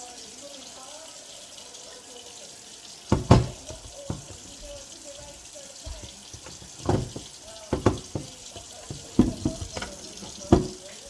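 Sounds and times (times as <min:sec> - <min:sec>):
knocks in sink: 0:03.1 - 0:11.0
tap running into sink: 0:03.1 - 0:11.0.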